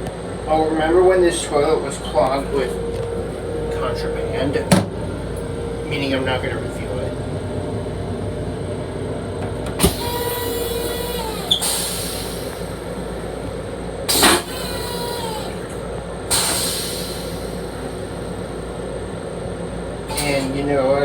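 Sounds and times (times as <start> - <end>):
faint whine: 0.0 - 21.0
train running rumble: 0.0 - 21.0.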